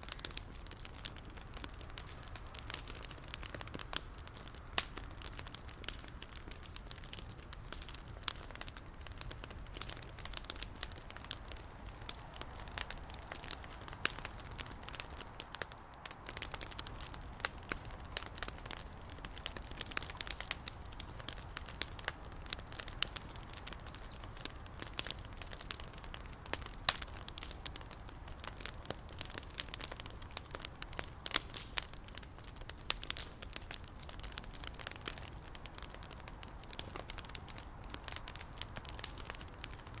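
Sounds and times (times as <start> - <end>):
wood bonfire crackling: 0.0 - 40.0.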